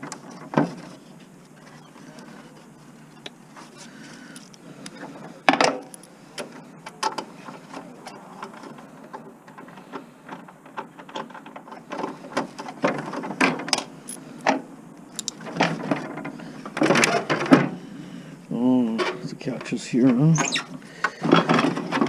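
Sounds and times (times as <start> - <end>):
metal tools clinking: 14.0 - 14.5, 15.1 - 15.5.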